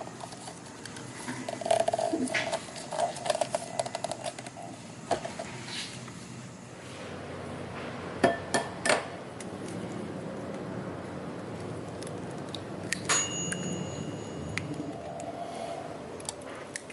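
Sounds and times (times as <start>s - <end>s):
hard objects clinking: 0.0s - 5.4s
short ringing tone: 13.1s - 14.9s.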